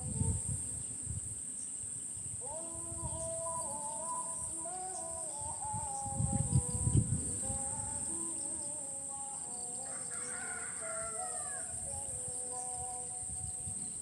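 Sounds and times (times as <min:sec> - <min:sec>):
insects humming: 0:00.0 - 0:14.0
rooster crowing: 0:08.2 - 0:13.1.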